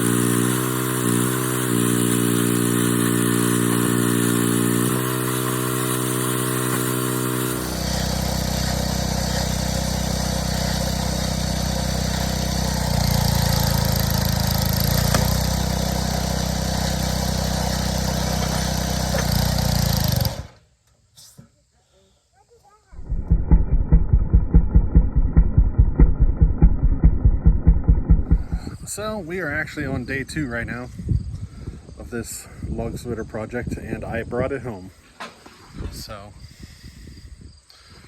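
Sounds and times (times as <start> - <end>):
small gasoline engine running: 0.0 - 20.6, 23.0 - 28.8.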